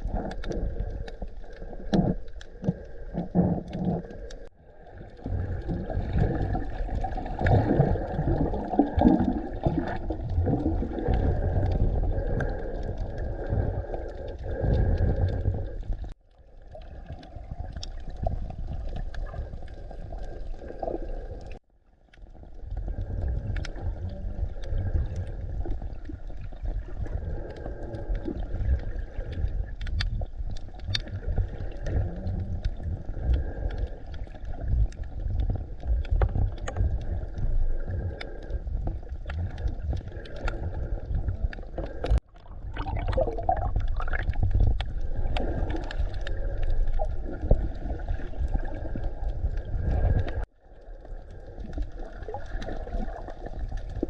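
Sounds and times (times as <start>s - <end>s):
muffled underwater water rush: 0.0s - 54.0s
faint clicks: 21.4s - 42.2s.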